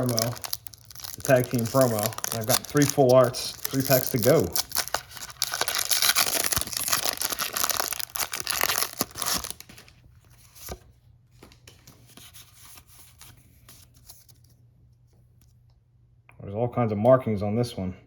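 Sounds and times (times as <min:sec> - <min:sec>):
foil pack tearing and crinkling: 0:00.0 - 0:09.9
cards clicking and rustling: 0:00.0 - 0:14.5.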